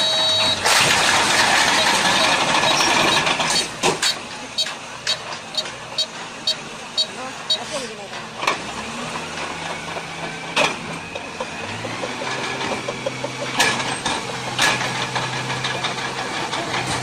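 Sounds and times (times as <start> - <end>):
heavy machine engine running: 0.0 - 17.0.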